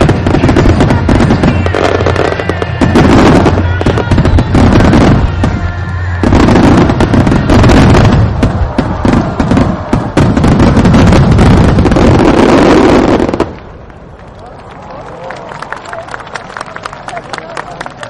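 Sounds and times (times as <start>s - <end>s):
fireworks bangs and crackles: 0.0s - 14.1s.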